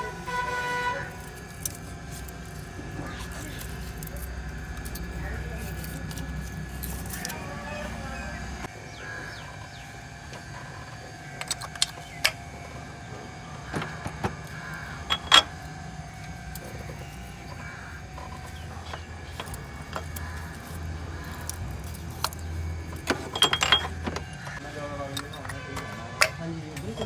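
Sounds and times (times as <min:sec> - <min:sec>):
steady low hum: 0:00.0 - 0:27.0
metal hand tools clinking: 0:18.2 - 0:27.0.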